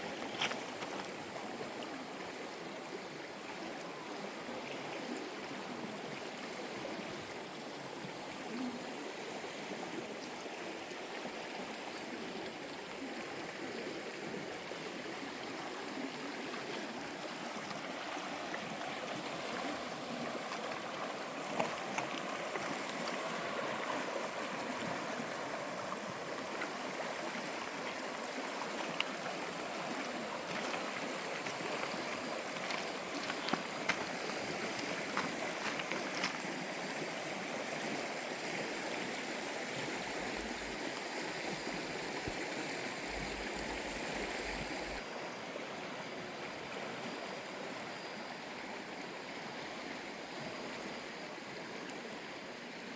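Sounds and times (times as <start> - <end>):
stream flowing: 0.0 - 52.9
faint clicks and splashes: 29.9 - 36.5.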